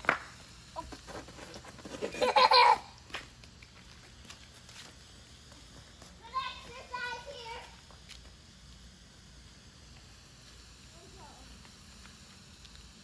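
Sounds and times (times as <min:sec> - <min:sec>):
outdoor background noise: 0:00.0 - 0:13.0
child laughing: 0:01.9 - 0:03.0.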